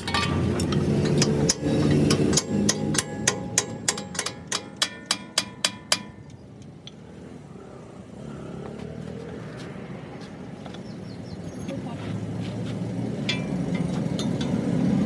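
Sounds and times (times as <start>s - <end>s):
hammer striking ringing steel: 0.0s - 6.3s.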